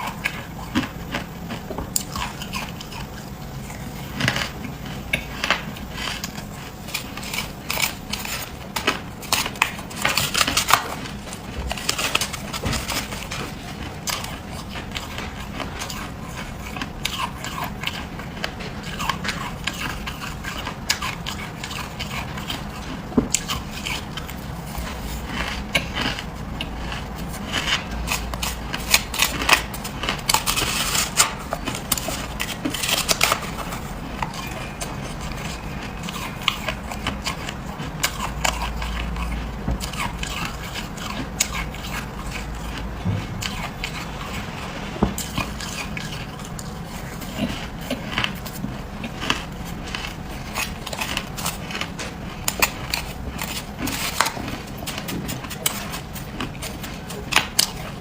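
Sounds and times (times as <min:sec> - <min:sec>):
frost being bitten and chewed: 0:00.0 - 0:58.0.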